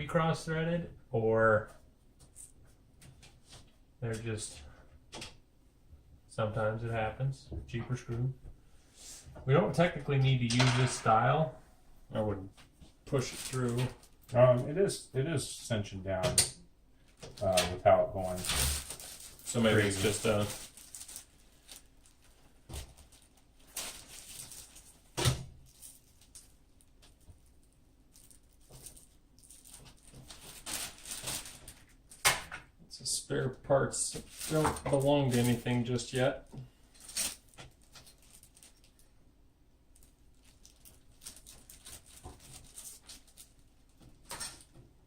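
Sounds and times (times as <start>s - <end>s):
knocks and clatters of parts: 10.4s - 11.3s
rustling: 18.2s - 32.2s, 34.1s - 39.2s, 39.9s - 44.9s.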